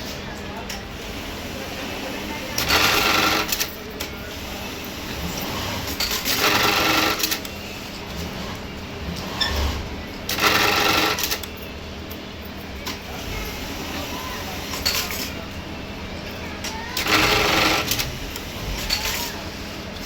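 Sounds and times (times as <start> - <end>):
sewing machine stitching: 2.6 - 3.7, 5.2 - 7.5, 9.2 - 11.5, 17.0 - 19.3.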